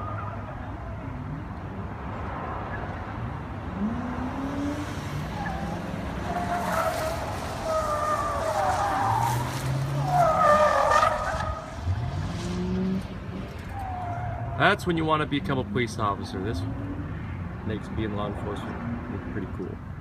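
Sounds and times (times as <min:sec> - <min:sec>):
car engines revving: 0:00.0 - 0:20.0
tyres squealing: 0:05.2 - 0:11.8.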